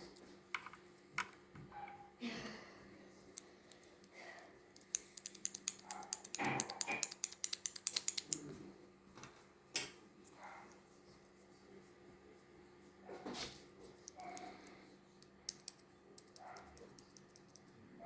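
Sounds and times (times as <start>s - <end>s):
mechanical keyboard key clicks: 4.8s - 8.4s.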